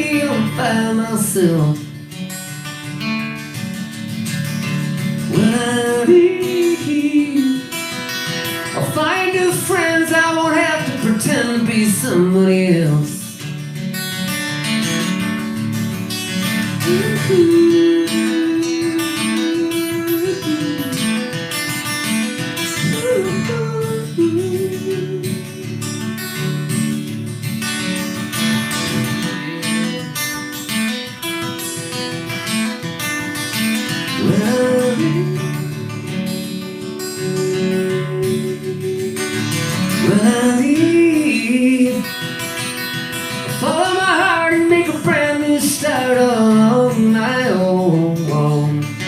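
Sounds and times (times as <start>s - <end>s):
acoustic guitar accompaniment: 0.0s - 49.0s
sliding melodic lead notes: 13.9s - 43.6s.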